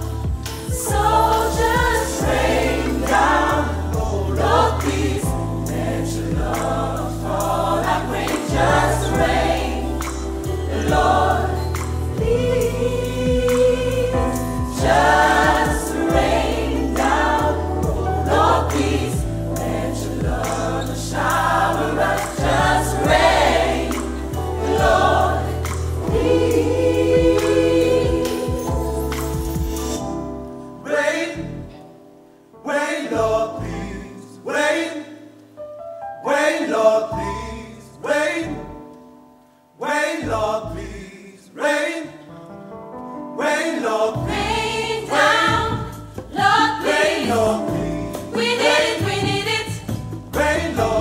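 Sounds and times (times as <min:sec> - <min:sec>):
gospel choir singing: 0:00.0 - 0:30.1, 0:30.8 - 0:31.8, 0:32.6 - 0:35.6, 0:36.2 - 0:38.8, 0:39.8 - 0:42.3, 0:43.3 - 0:51.0
drums beating: 0:13.3 - 0:29.8, 0:44.3 - 0:51.0.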